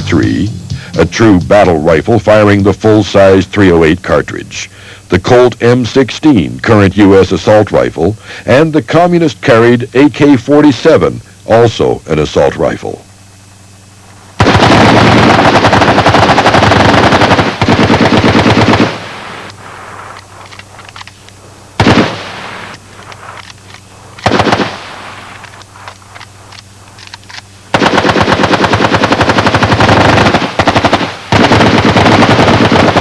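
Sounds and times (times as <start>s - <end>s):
automatic rifle fire: 14.4s - 19.5s, 21.8s - 22.8s, 24.2s - 25.5s, 27.7s - 33.0s.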